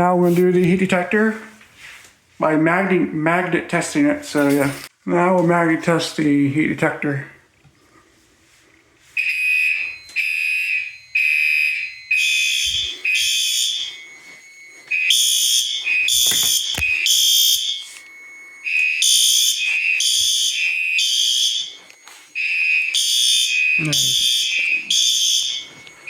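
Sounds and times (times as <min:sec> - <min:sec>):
fire alarm horns blasting: 0:09.1 - 0:26.0.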